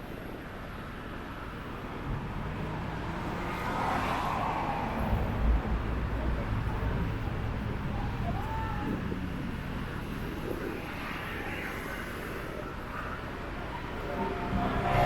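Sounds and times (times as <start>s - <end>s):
city street traffic: 0.0s - 15.0s
vehicle passing close by: 2.6s - 6.5s, 14.0s - 15.0s.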